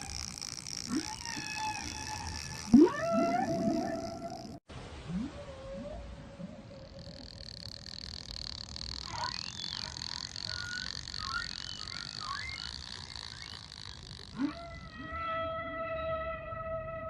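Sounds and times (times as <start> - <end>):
whale calls: 0.0 - 17.0
steady high whine: 6.6 - 15.0
high squeaks and chirps: 7.1 - 15.6.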